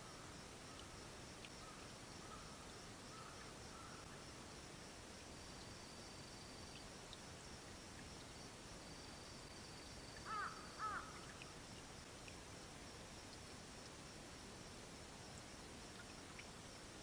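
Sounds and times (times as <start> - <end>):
night insects trilling: 0.0 - 12.1.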